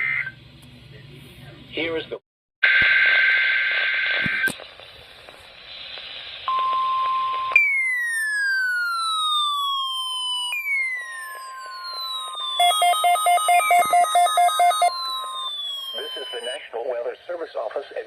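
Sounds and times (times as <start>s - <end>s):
falling whistle-like sweep: 7.5s - 16.6s
steady beep tone: 10.6s - 16.6s.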